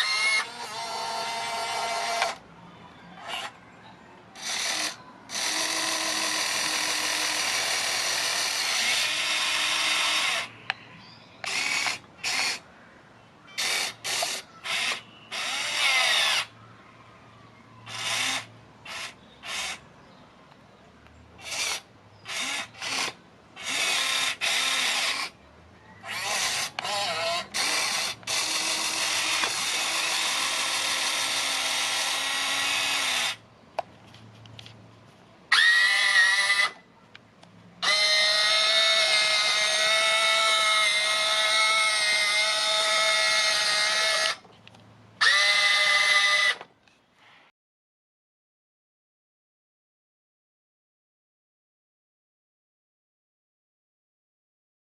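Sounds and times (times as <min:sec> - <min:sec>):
electric gear motors whining: 0:00.0 - 0:02.4, 0:04.4 - 0:10.6, 0:13.6 - 0:16.5, 0:21.4 - 0:25.4, 0:26.0 - 0:33.4, 0:35.5 - 0:36.8, 0:37.8 - 0:44.4.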